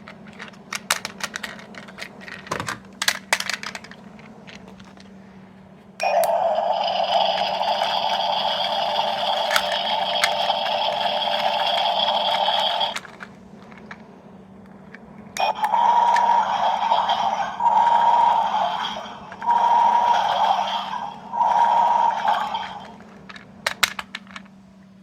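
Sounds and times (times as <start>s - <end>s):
toy speaker buzzing sound effect: 6.0s - 13.2s, 15.4s - 23.1s.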